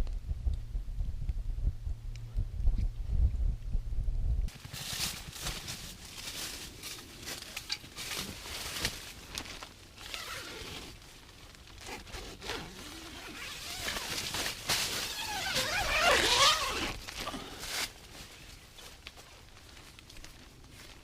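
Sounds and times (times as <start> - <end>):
rustling handling noises: 4.5 - 21.0.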